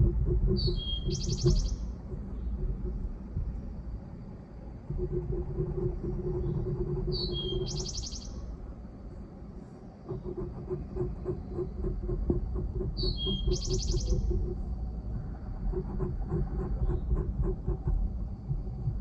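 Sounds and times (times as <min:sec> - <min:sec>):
low pulsing hum and rumble: 0:00.0 - 0:19.0
songbird whistle and buzzy trill: 0:00.6 - 0:01.9, 0:07.1 - 0:08.4, 0:13.0 - 0:14.3.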